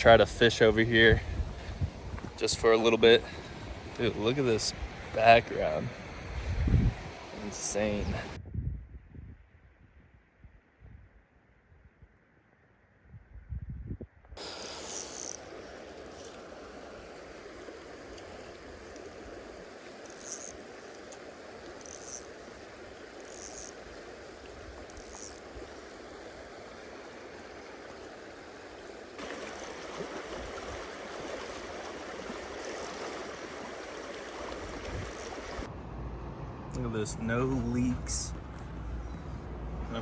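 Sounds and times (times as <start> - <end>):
stream water flowing: 0.0 - 8.4, 14.4 - 35.7.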